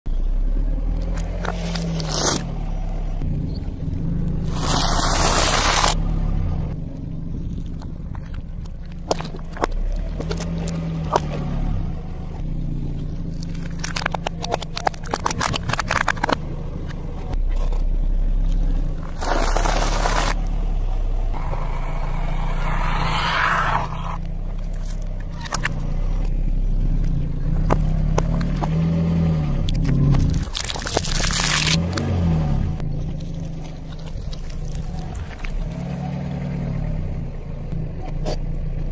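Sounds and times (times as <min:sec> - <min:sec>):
car engine hum: 0:00.1 - 0:38.9
tyre crushing objects: 0:19.0 - 0:20.4, 0:29.7 - 0:32.1.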